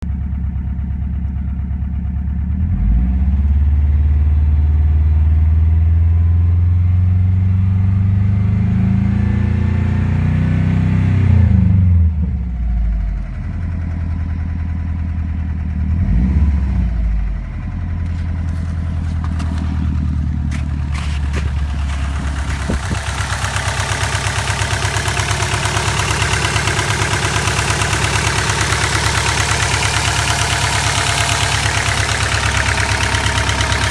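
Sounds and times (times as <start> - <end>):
fast even engine rattle: 12.4 - 33.9
vehicle engine revving: 15.8 - 33.9.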